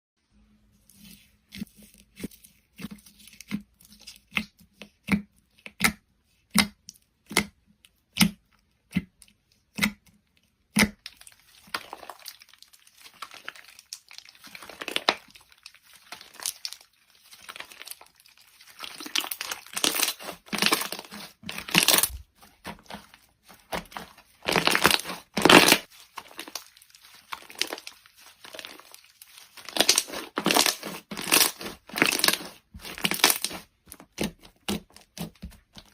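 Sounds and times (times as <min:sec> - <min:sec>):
slime popping and crackling: 0:10.7 - 0:35.9.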